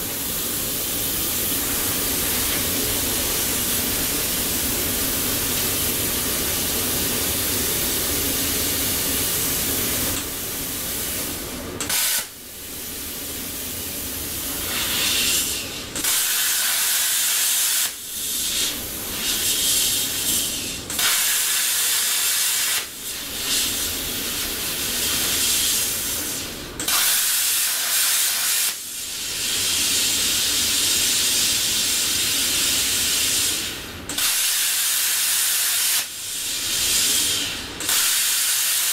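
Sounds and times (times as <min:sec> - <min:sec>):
plasma cutter hissing: 0:00.0 - 0:38.9.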